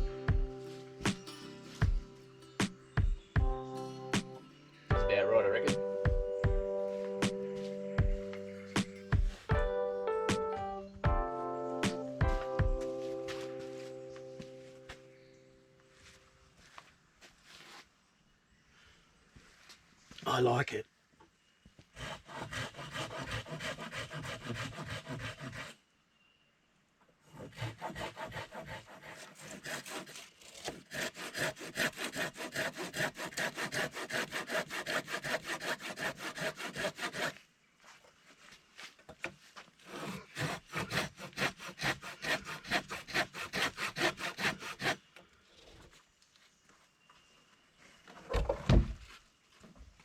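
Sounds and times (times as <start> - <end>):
hand saw cutting timber: 7.2 - 9.1, 21.9 - 25.8, 27.3 - 37.4, 39.8 - 45.1.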